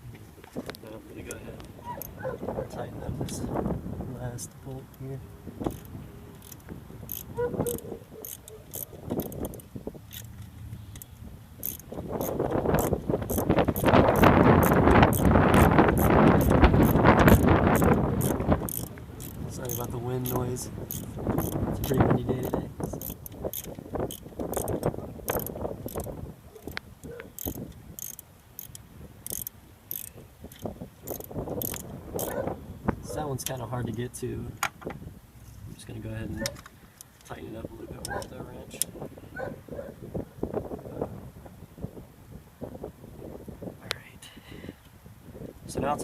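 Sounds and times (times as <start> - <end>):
wind buffeting microphone: 0.0 - 46.0
ratchet wrench clicking: 5.6 - 32.4.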